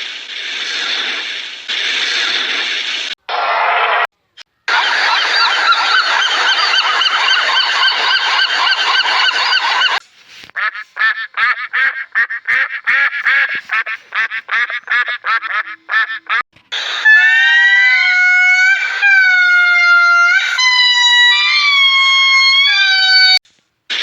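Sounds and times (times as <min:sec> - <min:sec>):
flock of birds honking: 0:04.7 - 0:10.0.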